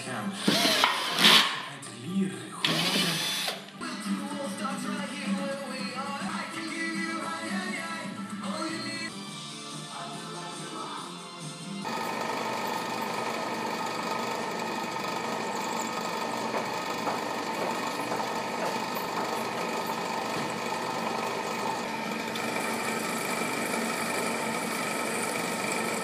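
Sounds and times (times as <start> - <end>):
electric power tool whining: 0.4 - 1.6, 2.6 - 3.8, 11.8 - 26.0.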